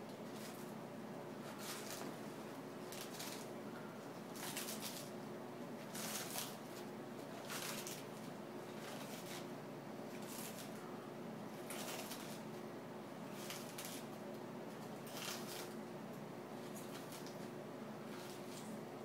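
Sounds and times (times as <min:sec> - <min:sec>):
tortoise crunching lettuce: 0:01.4 - 0:02.2, 0:02.8 - 0:03.6, 0:04.3 - 0:05.2, 0:05.8 - 0:09.5, 0:10.1 - 0:10.8, 0:11.5 - 0:12.6, 0:13.2 - 0:15.8, 0:16.6 - 0:18.8.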